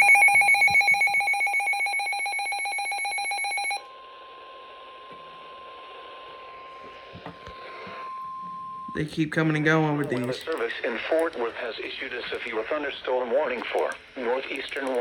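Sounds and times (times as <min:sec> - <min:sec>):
electronic ringing alarm: 0:00.0 - 0:03.9
radio hiss: 0:08.8 - 0:15.0.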